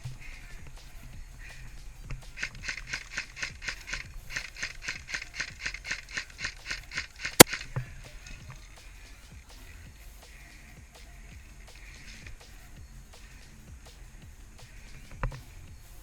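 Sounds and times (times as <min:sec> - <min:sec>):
running footsteps crunching: 0:00.0 - 0:08.7
sharp click: 0:02.1 - 0:07.8.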